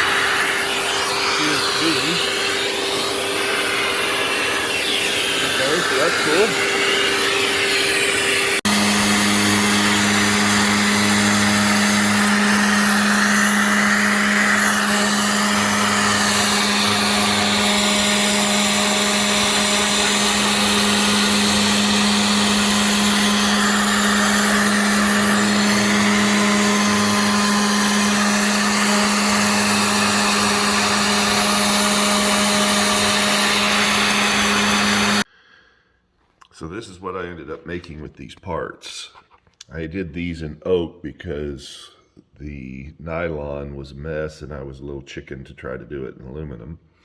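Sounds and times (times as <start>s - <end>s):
router bit cutting noise: 0.0s - 35.3s
router spindle humming: 0.0s - 35.3s.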